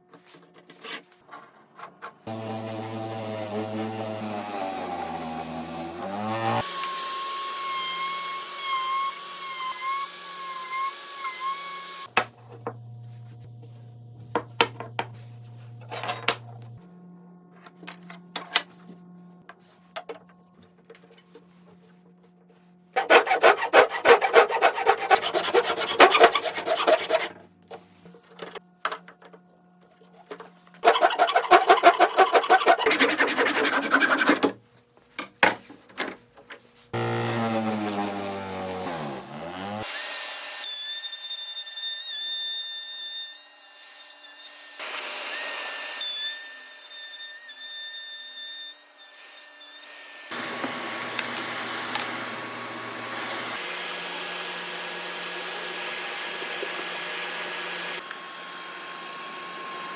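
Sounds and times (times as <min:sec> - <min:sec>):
rubbing strokes on wood: 0:23.0 - 0:27.3, 0:30.8 - 0:34.4
power tool whining: 0:50.3 - 0:59.9.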